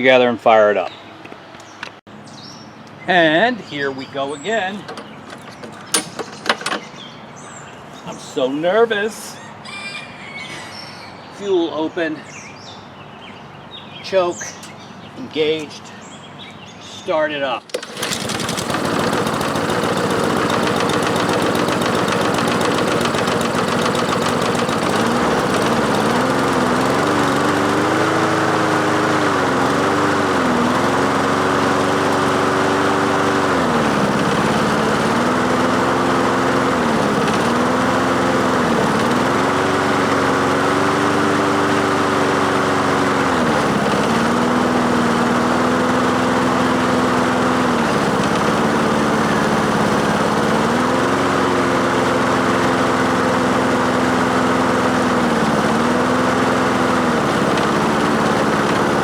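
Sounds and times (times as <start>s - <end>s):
lawn mower engine surging: 4.2s - 7.2s, 17.6s - 59.0s.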